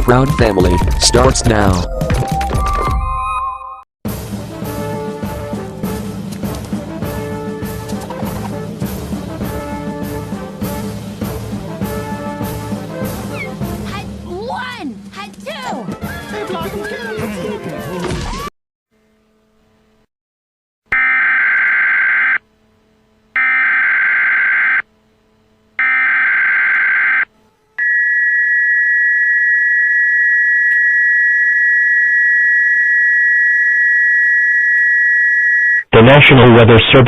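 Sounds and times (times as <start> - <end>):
steady attention tone: 21.0 - 35.8.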